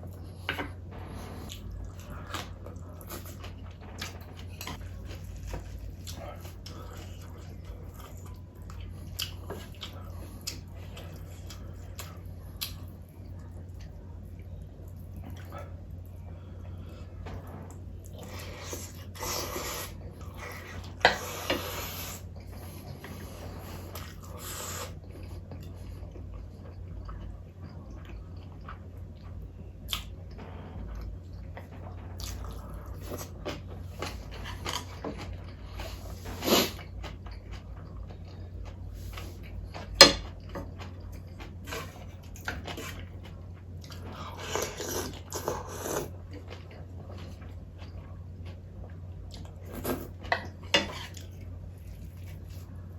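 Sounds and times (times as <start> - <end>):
steady low hum: 0.0 - 52.9.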